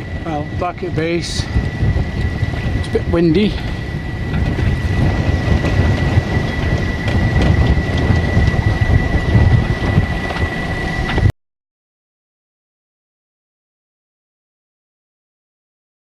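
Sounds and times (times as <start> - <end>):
faint high whine: 0.0 - 11.3
wind buffeting microphone: 0.0 - 11.3.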